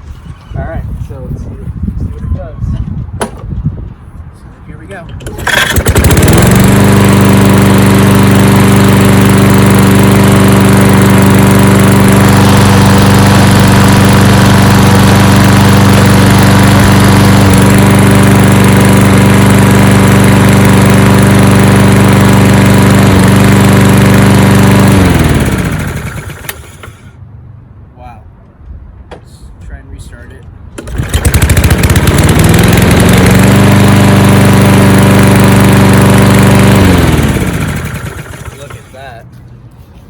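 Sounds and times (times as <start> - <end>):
lawn mower engine running: 5.0 - 27.2, 30.8 - 39.2
recoil starter pull: 5.1 - 10.1, 11.0 - 27.1, 30.8 - 39.0.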